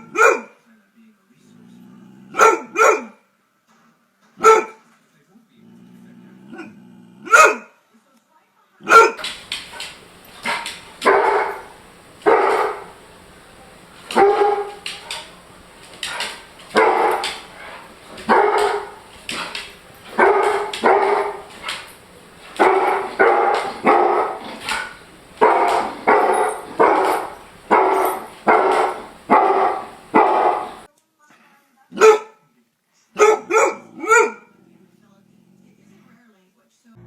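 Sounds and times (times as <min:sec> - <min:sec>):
dog barking: 0:00.0 - 0:00.6, 0:02.3 - 0:03.2, 0:04.4 - 0:04.8, 0:07.2 - 0:07.8, 0:08.8 - 0:30.9, 0:32.0 - 0:32.5, 0:33.2 - 0:34.6.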